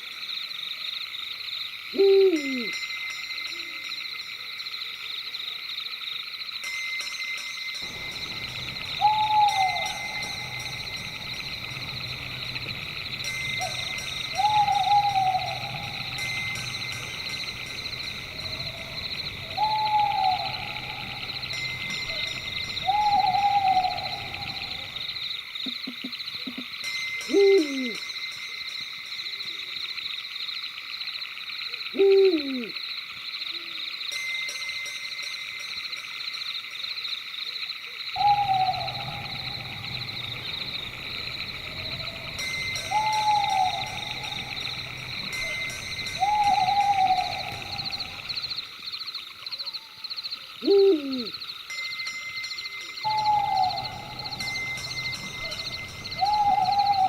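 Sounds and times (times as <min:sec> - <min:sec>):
night insects chorus: 0:00.0 - 0:57.0
owl hooting: 0:02.0 - 0:02.8, 0:07.9 - 0:25.1, 0:27.3 - 0:28.0, 0:32.0 - 0:32.8, 0:38.2 - 0:48.6, 0:50.6 - 0:51.4, 0:53.0 - 0:57.0
high chirring: 0:07.8 - 0:25.2, 0:38.2 - 0:48.7, 0:50.6 - 0:57.0.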